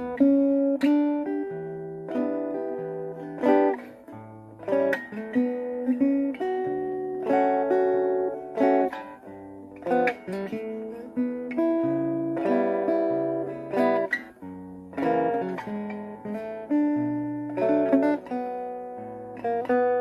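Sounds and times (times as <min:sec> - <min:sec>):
amplified guitar strumming chords: 0:00.0 - 0:20.0.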